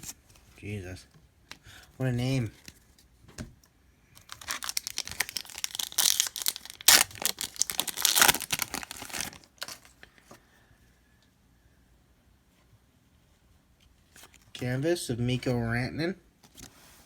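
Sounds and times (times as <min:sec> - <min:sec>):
foil wrapper crinkling and tearing: 0:04.2 - 0:10.0.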